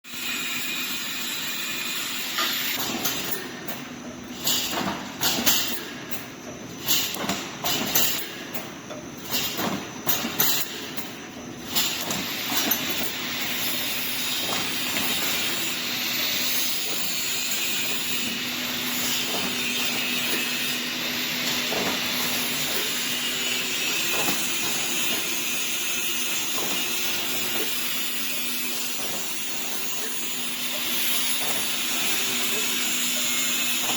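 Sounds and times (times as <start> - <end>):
welding machine hissing and humming: 0.1 - 33.9
sharp welding bursts: 11.6 - 33.9.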